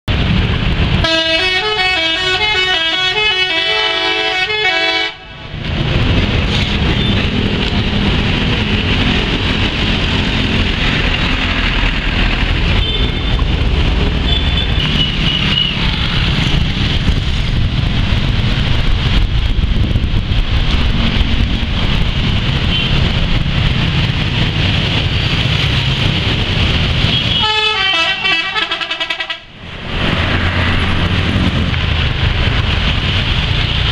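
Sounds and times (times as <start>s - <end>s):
rumbling vehicle noise: 0.0s - 33.9s
air horns playing a tune: 1.0s - 5.4s, 27.1s - 29.5s.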